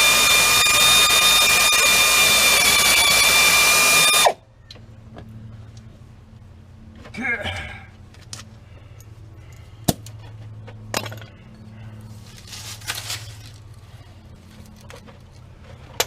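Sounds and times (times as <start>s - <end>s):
steady low hum: 3.6s - 16.0s.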